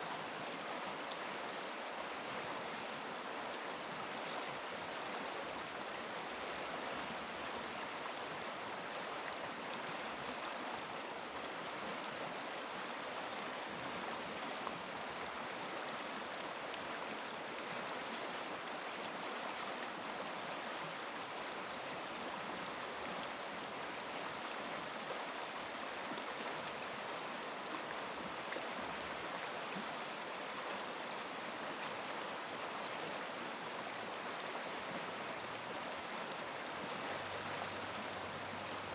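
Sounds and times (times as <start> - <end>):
river water babbling over stones: 0.0 - 38.9.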